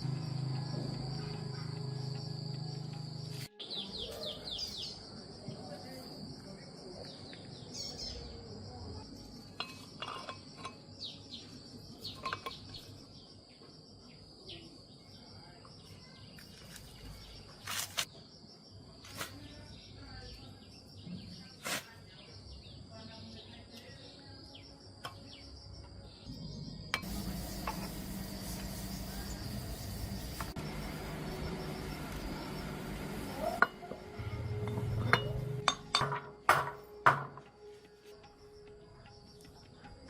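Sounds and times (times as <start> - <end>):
high insect drone: 0.0 - 20.0, 22.1 - 35.7
metal tools clinking: 9.6 - 10.8.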